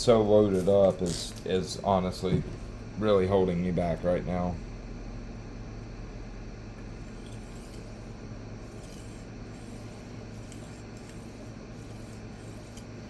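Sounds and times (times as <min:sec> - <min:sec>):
steady low hum: 0:00.0 - 0:13.0
knife scraping on sharpening stone: 0:08.6 - 0:13.0.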